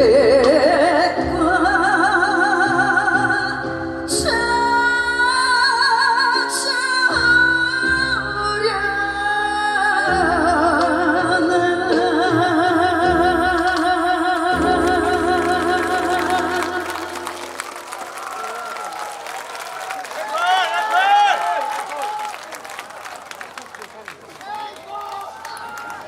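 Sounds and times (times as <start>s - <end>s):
woman singing with vibrato: 0.0s - 17.6s
backing band track: 10.1s - 18.6s.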